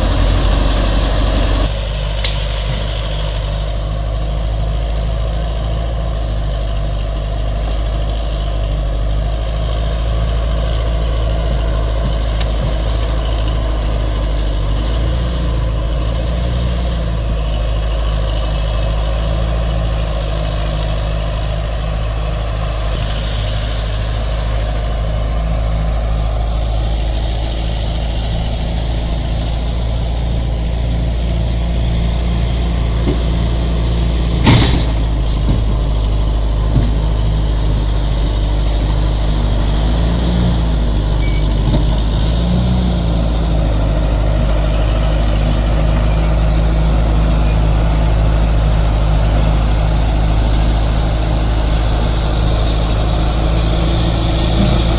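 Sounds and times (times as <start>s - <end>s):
heavy diesel engine running: 0.0s - 54.9s
sharp knocks: 32.8s - 36.0s.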